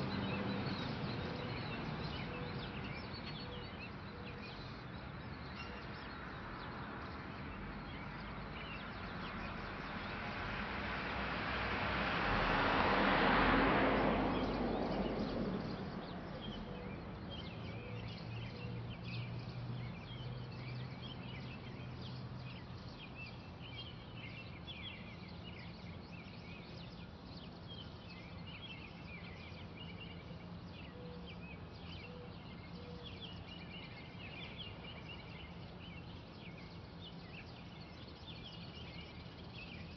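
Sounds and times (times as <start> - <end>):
birds chirping: 0.0 - 10.4, 14.3 - 39.9
vehicle passing: 10.2 - 16.7.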